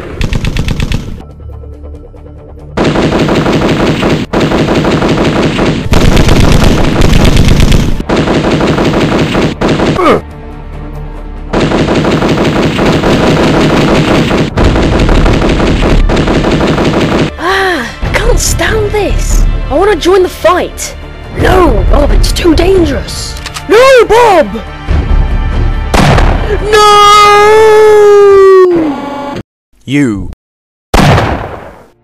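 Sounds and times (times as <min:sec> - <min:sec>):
rapid-fire gunshots: 0:00.0 - 0:01.2, 0:02.8 - 0:10.2, 0:11.5 - 0:17.4.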